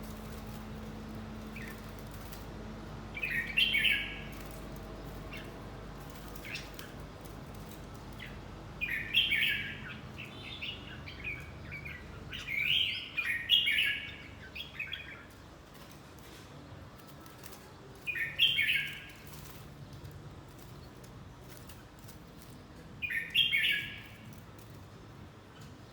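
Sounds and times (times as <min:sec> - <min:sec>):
bird chirps: 0:03.1 - 0:07.0, 0:08.1 - 0:15.4, 0:18.0 - 0:19.6, 0:22.5 - 0:24.4
bulbul singing warbled phrases: 0:03.1 - 0:15.4, 0:17.5 - 0:19.6, 0:23.0 - 0:24.7.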